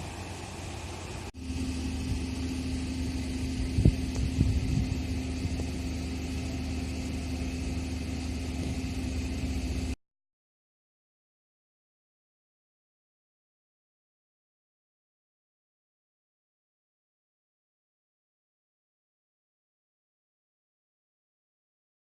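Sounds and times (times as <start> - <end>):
motor humming: 0.0 - 10.0.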